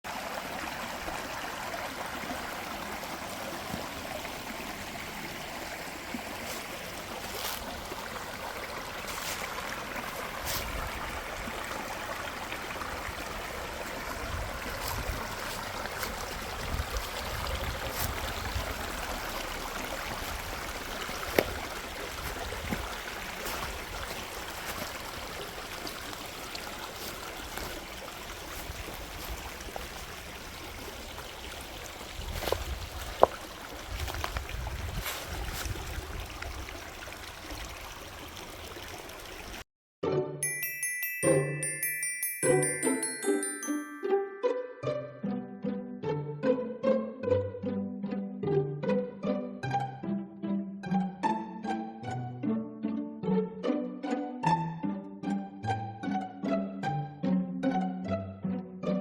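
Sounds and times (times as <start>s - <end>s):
stream water rushing: 0.0s - 39.6s, 40.4s - 45.0s.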